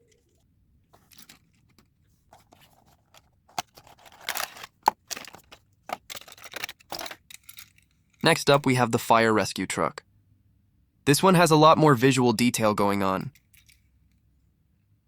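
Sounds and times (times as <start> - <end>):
toy trucks and packaging handled: 0.0 - 8.6, 13.2 - 14.3.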